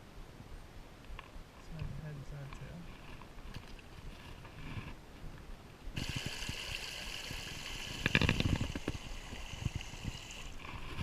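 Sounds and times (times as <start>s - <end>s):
water splashing and trickling: 6.0s - 11.0s.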